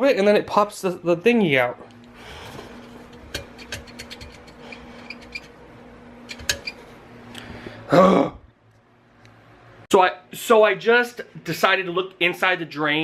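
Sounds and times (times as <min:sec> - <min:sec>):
garbage disposal motor humming: 0:01.8 - 0:09.7
clicks and rattles in sink: 0:03.2 - 0:05.4.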